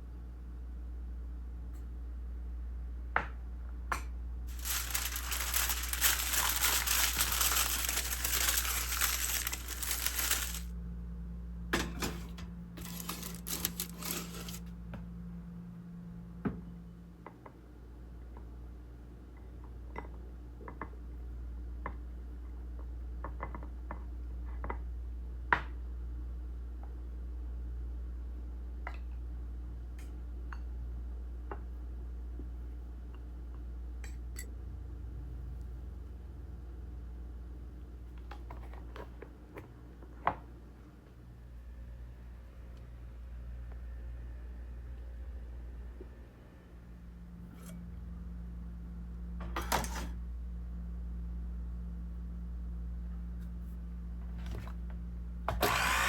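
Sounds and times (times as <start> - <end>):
crinkling packaging: 4.5 - 10.7, 12.8 - 14.6
rustling bursts: 4.5 - 10.7, 12.8 - 14.6.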